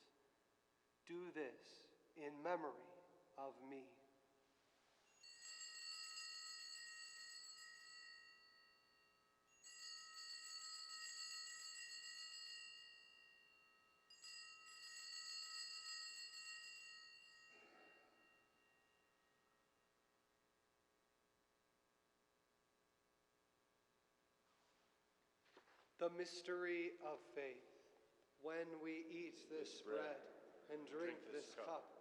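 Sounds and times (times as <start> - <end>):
altar bells ringing: 5.0 - 19.6.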